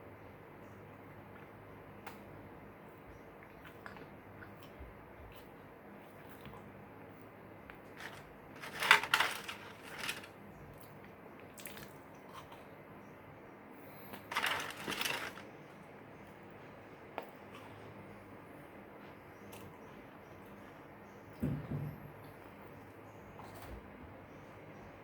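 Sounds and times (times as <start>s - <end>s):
cookies crunching: 7.8s - 10.4s, 14.2s - 15.5s.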